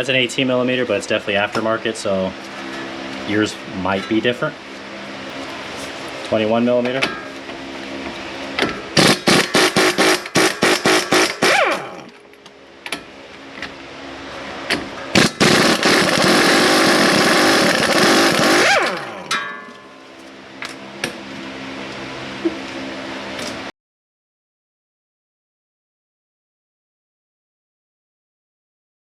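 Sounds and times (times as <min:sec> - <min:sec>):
impact wrench hammering: 0:08.6 - 0:12.1, 0:15.2 - 0:19.8.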